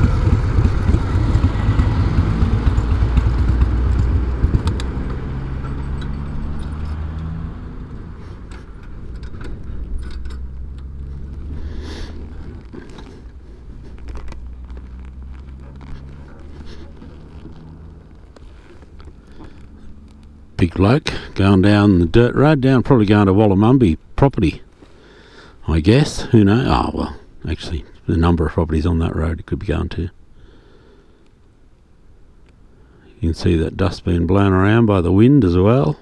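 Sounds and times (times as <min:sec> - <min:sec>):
motorcycle engine running: 0:00.0 - 0:20.6.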